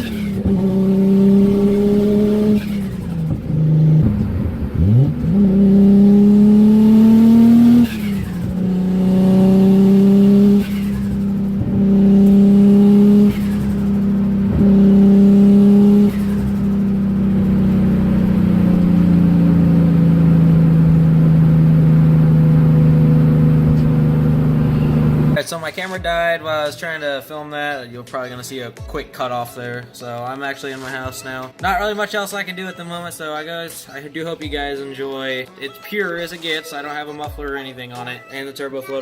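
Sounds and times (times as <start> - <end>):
car engine revving: 0.0 - 25.4.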